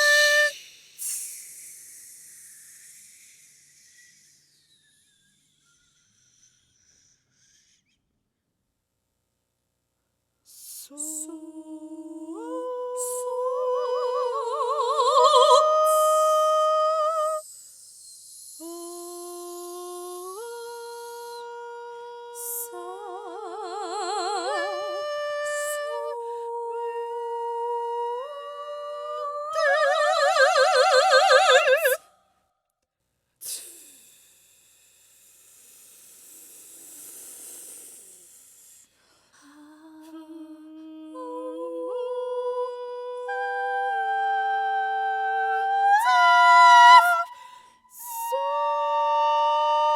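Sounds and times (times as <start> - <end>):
breathy hissing: 33.4 - 39.3.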